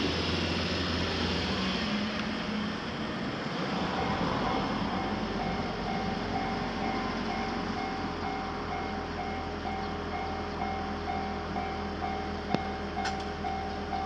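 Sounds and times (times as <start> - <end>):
rumble of passing traffic: 0.0 - 14.0
railroad crossing warning bell: 3.8 - 14.0.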